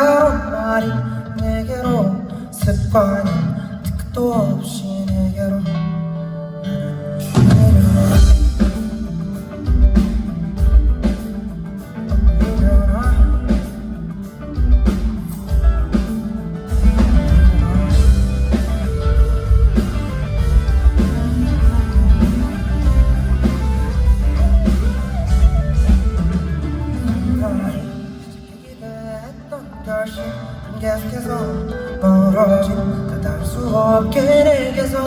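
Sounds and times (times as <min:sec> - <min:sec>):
live rock band playing: 0:00.0 - 0:35.0.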